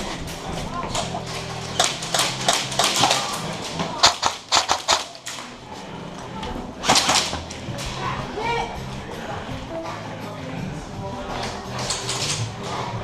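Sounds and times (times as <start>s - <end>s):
airsoft guns firing: 1.6s - 5.5s, 6.8s - 7.6s.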